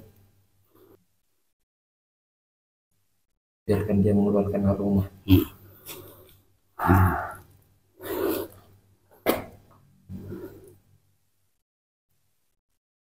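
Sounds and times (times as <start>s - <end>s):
person breathy puffs: 8.0s - 8.6s.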